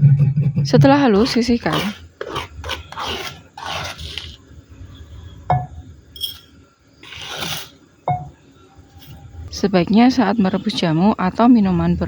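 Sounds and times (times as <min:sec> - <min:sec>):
scraping on a stone mortar: 0:00.1 - 0:04.4, 0:07.0 - 0:07.8
crockery clinking: 0:05.5 - 0:06.6.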